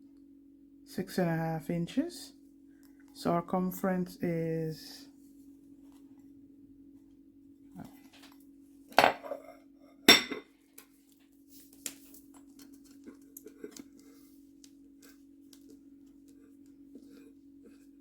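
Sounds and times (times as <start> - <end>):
bowl knocking on hard surface: 10.1 - 10.5.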